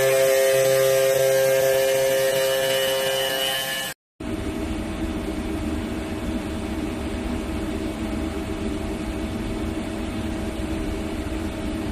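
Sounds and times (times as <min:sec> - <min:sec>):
machine humming: 0:00.0 - 0:05.1.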